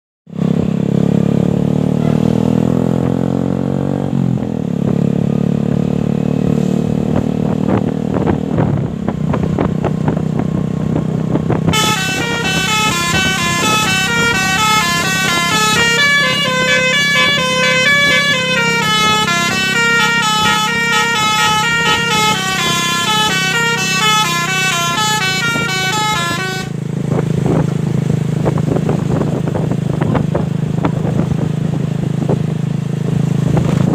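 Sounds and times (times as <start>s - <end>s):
bus engine: 0.3s - 33.9s
musical air horn melody: 1.9s - 2.4s, 11.7s - 26.8s.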